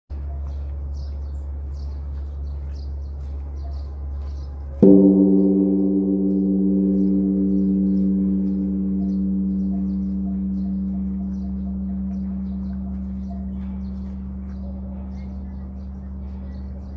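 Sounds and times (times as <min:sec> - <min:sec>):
deep hum: 0:04.8 - 0:16.9
large bell ringing: 0:04.8 - 0:16.9.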